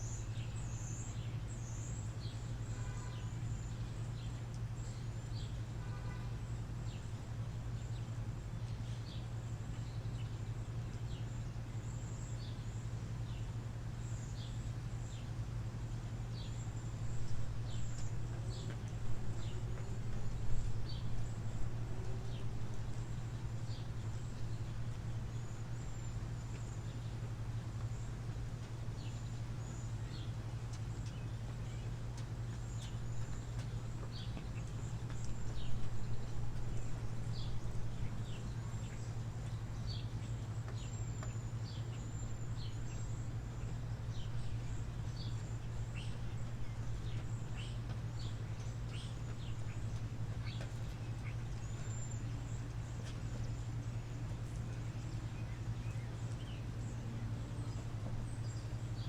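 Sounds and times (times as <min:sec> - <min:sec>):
steady low hum: 0:00.0 - 0:59.0
birds chirping: 0:16.2 - 0:59.0.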